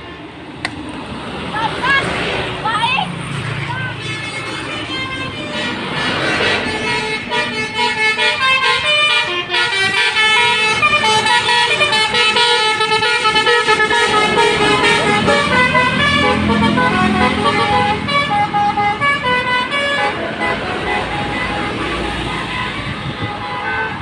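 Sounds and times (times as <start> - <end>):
bus horn playing a melody: 3.8 - 24.0.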